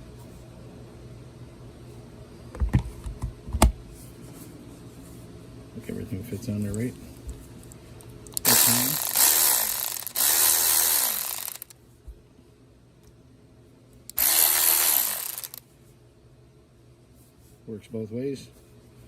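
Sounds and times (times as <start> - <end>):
cordless ratchet motor whine: 8.3 - 11.8, 14.1 - 15.6.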